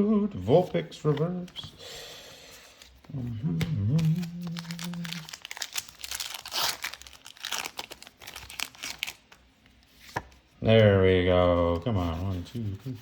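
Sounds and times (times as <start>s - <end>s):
foil wrapper crinkling and tearing: 3.9s - 9.4s.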